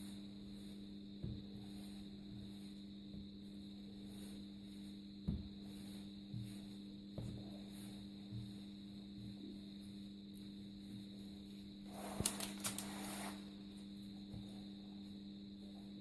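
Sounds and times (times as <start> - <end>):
faint steady hum: 0.0 - 16.0
parchment paper rustling: 11.9 - 13.5.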